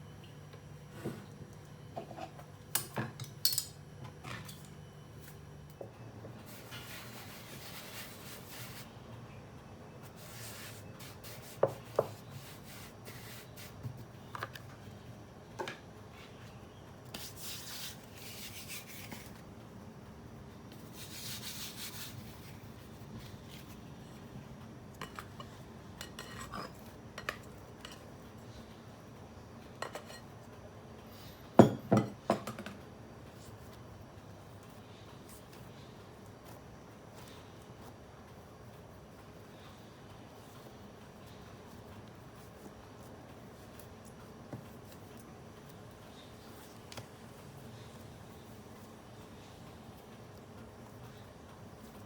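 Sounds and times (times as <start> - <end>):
utensils and bowl clinking: 2.0 - 4.7.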